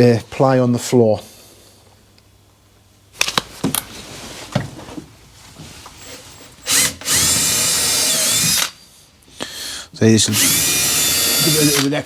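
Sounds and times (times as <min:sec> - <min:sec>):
power drill driving screw: 0:06.6 - 0:08.8, 0:10.3 - 0:12.0.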